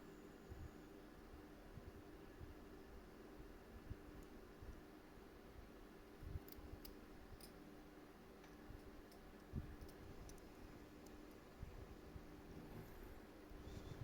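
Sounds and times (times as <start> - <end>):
low steady hum: 0.0 - 14.0
small metal tool clicks: 6.4 - 7.6.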